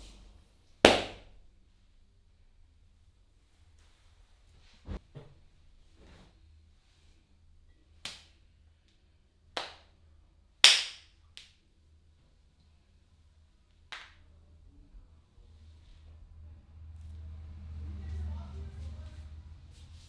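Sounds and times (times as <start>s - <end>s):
hand slaps on head: 10.6s - 11.5s.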